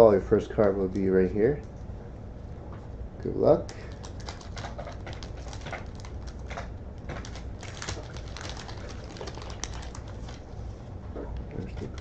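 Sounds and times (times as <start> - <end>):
wax paper wrapper crinkling: 3.6 - 10.8.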